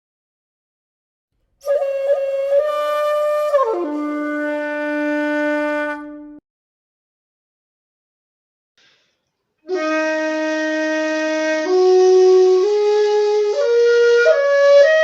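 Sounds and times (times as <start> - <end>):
bamboo flute playing: 1.6 - 6.4, 9.6 - 15.0.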